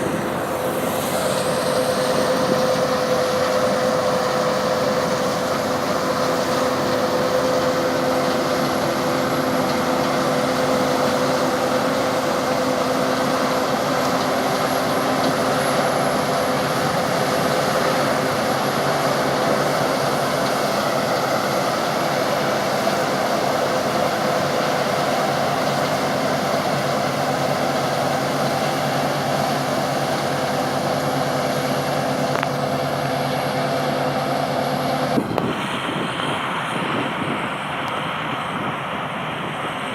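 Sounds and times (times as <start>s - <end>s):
combine harvester drone: 0.0s - 39.9s
machinery whining tones: 0.0s - 39.9s.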